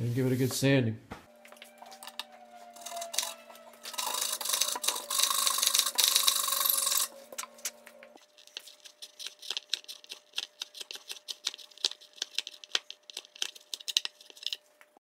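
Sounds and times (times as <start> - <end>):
hand tool rasping across wood: 2.8 - 7.1.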